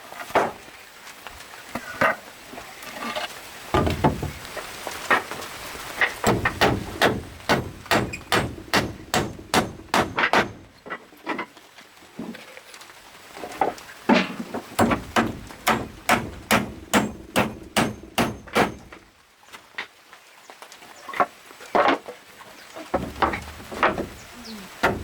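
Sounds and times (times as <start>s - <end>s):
steady hammering: 3.8s - 4.5s, 6.2s - 10.8s, 14.8s - 19.0s.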